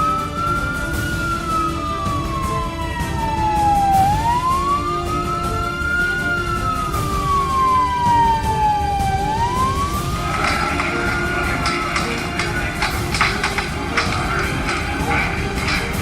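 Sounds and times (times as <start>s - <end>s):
emergency siren wailing: 0.0s - 16.0s
steady low rumble: 8.2s - 16.0s.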